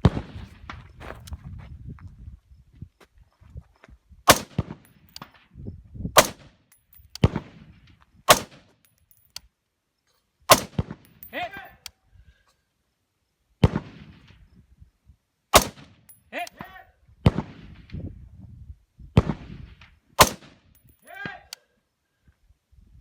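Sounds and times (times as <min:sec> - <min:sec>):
rifle shots: 0:04.3 - 0:04.8, 0:06.2 - 0:06.5, 0:08.3 - 0:08.6, 0:10.5 - 0:11.0, 0:15.6 - 0:16.0, 0:20.2 - 0:20.6.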